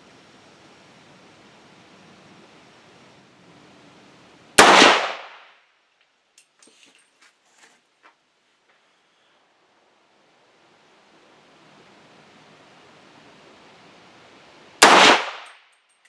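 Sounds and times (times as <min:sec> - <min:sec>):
rifle shot: 0:04.6 - 0:05.5, 0:14.8 - 0:15.6.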